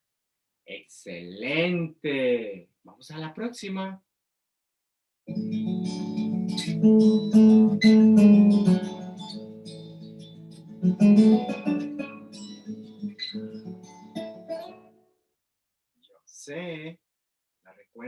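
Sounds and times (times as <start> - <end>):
guitar strumming chords: 5.3 - 14.9.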